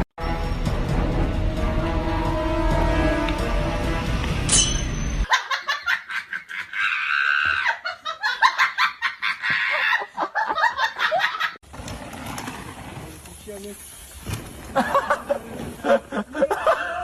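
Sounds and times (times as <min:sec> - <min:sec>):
music: 0:00.2 - 0:05.0
person laughing in choppy bursts: 0:14.8 - 0:17.0.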